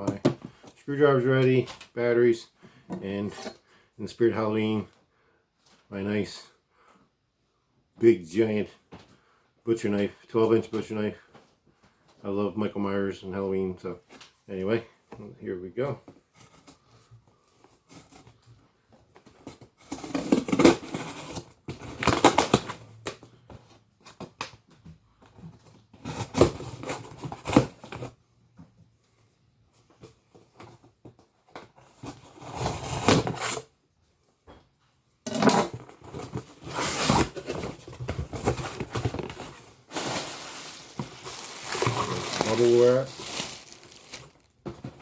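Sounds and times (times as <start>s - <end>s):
knife cutting cardboard box: 19.8s - 22.7s, 32.0s - 33.6s, 35.4s - 39.5s
cardboard scraping and tearing: 32.1s - 33.6s, 35.6s - 45.0s.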